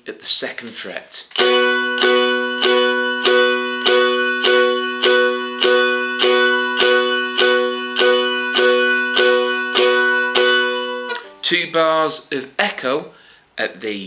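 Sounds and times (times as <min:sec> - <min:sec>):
dulcimer strumming: 0:01.3 - 0:11.8.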